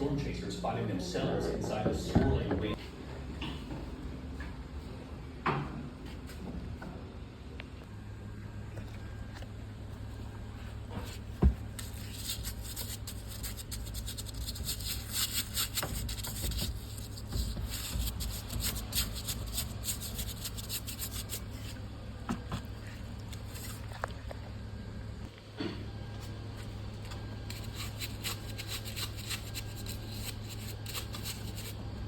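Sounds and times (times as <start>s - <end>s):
steady low hum: 0.0s - 32.0s
rubbing and scraping handling: 10.5s - 24.1s, 26.6s - 31.9s.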